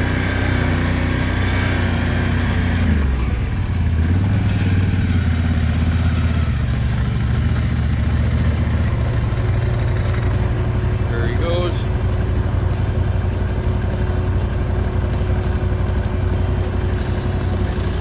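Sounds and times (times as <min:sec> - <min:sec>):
quad engine running: 0:00.0 - 0:18.0.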